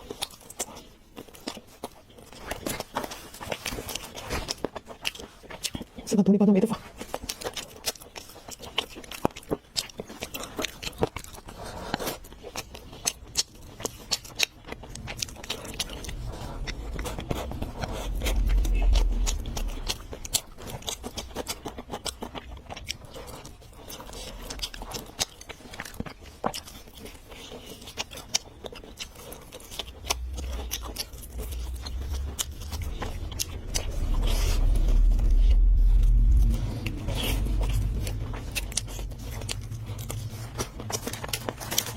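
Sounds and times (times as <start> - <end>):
chewing with wet clicks: 0.0 - 41.9
low rumble: 13.5 - 25.4, 29.3 - 41.9.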